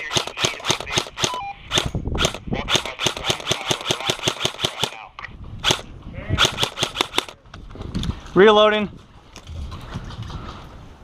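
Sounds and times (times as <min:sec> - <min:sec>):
airsoft gun shots: 0:00.0 - 0:05.0, 0:05.6 - 0:07.4.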